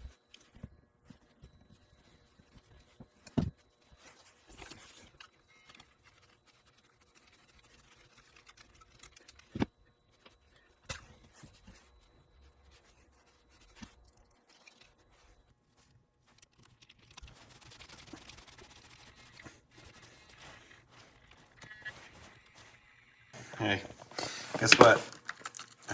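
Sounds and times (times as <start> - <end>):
scraping and rubbing: 12.7 - 25.9.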